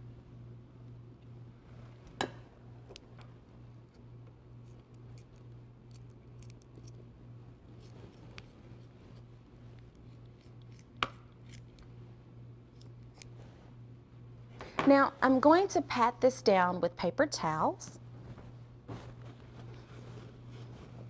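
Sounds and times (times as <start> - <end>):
faint low hum: 0.0 - 21.0
kitchen shears snipping: 10.0 - 11.8.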